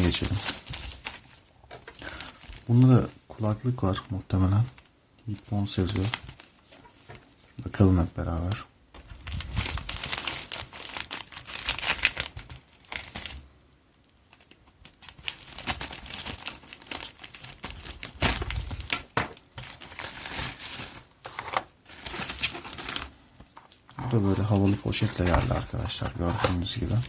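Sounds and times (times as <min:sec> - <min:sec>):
plastic bag crinkling and tearing: 0:00.0 - 0:03.1, 0:03.9 - 0:06.7, 0:09.0 - 0:13.5, 0:14.2 - 0:27.0.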